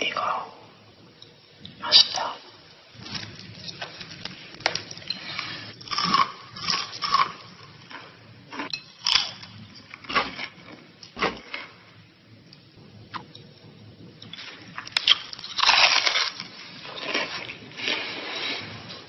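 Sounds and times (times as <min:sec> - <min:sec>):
person chewing crunchy food: 0:03.0 - 0:10.6, 0:14.2 - 0:19.0.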